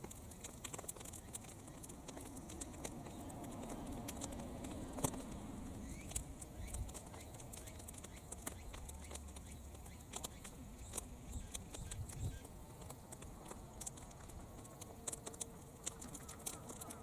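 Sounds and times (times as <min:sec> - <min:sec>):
bonfire crackling and popping: 0:00.0 - 0:17.0
low wind rumble: 0:01.2 - 0:08.9.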